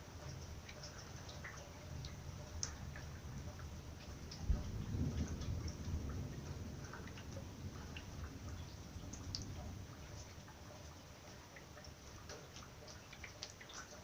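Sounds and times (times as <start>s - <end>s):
raindrops dripping and tapping: 0.0s - 14.0s
thunder rumble: 3.1s - 10.4s.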